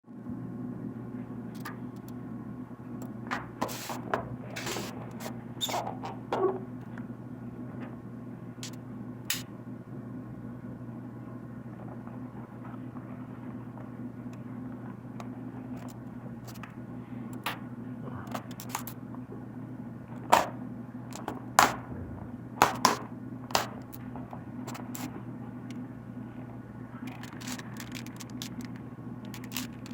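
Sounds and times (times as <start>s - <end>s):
steady low hum: 0.1s - 29.9s
plastic packaging clicks and snaps: 27.1s - 29.9s.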